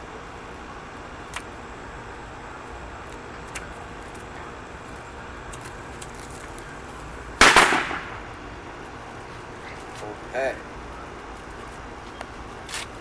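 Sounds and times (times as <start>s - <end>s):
firecracker bang: 7.4s - 8.5s.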